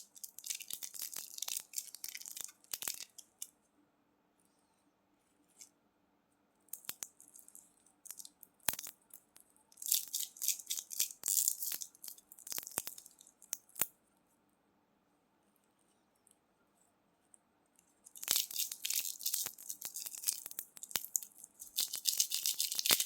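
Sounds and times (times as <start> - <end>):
candy wrapper clicks and crackles: 0.0 - 3.5, 6.7 - 13.9, 18.1 - 23.0.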